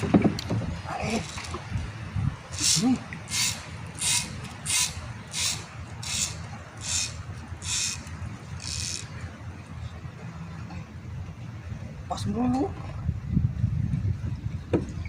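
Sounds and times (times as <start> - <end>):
rhythmic rasping strokes: 2.6 - 9.2.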